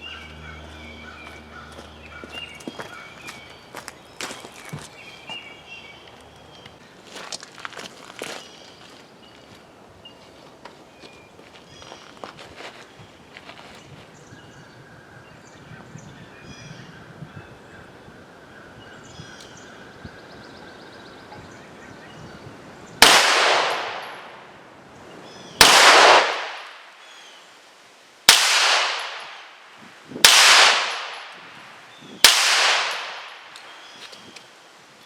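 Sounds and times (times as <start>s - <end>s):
gunshots: 23.0s - 24.4s, 25.6s - 26.8s, 28.3s - 29.6s, 30.2s - 31.4s, 32.2s - 33.5s.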